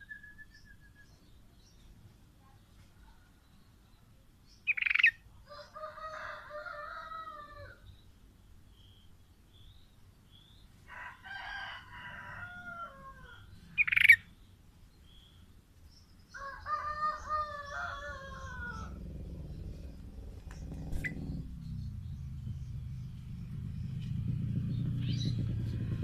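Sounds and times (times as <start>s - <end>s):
rooster crowing: 5.5s - 7.8s, 10.9s - 13.5s, 16.4s - 19.0s.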